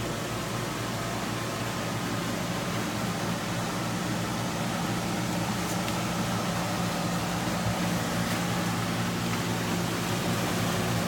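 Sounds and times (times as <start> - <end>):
fan humming and whirring: 0.0 - 11.0.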